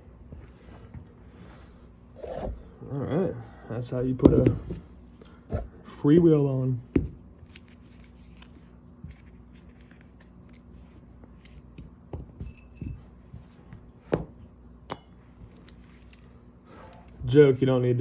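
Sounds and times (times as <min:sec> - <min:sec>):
metal tools clicking and tapping: 0:12.4 - 0:13.0, 0:14.9 - 0:16.2
ringing metal clink: 0:12.4 - 0:13.0, 0:14.9 - 0:15.3.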